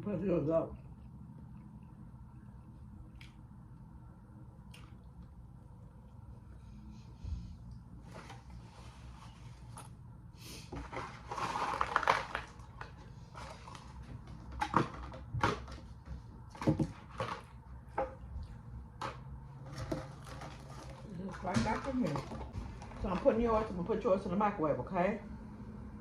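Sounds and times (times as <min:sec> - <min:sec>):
paper rustling and crinkling: 0:10.8 - 0:15.8, 0:19.6 - 0:23.7.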